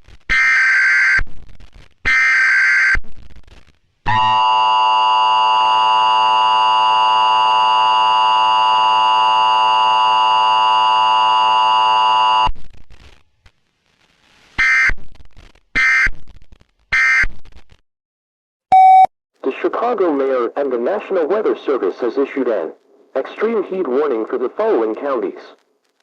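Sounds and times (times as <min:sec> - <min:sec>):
two-tone alarm signal: 0:04.1 - 0:12.5.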